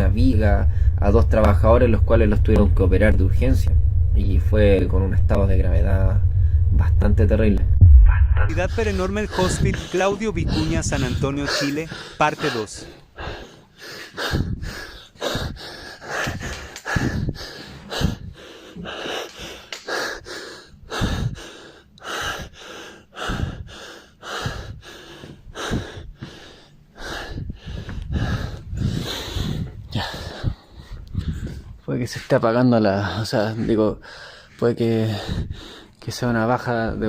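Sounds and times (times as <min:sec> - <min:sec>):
person breathing heavily: 0:00.0 - 0:02.8, 0:08.1 - 0:31.8, 0:33.1 - 0:36.0.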